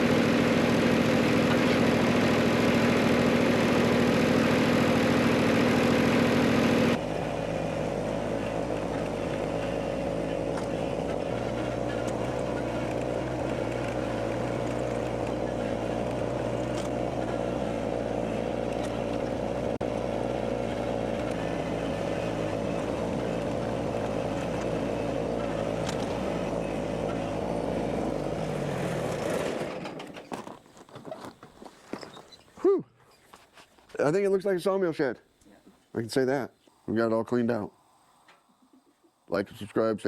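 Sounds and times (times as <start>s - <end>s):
engine humming: 0.0s - 32.6s.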